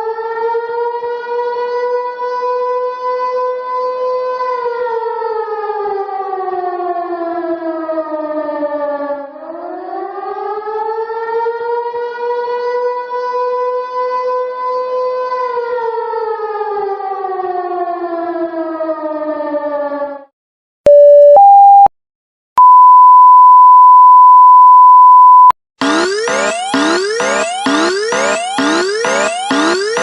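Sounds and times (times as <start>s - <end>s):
warning siren wailing: 25.8s - 30.0s.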